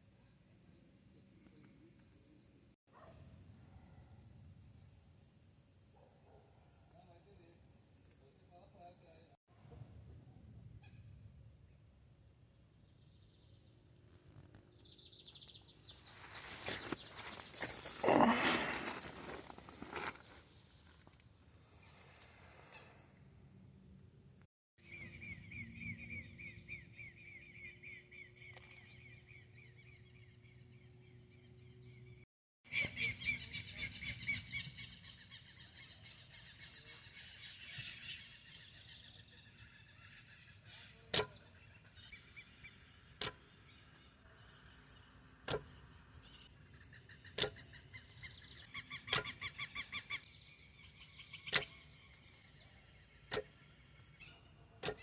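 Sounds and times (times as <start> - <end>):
birds chirping in trills: 14.8 - 19.0, 24.8 - 55.0
sharp clicks: 49.0 - 49.4.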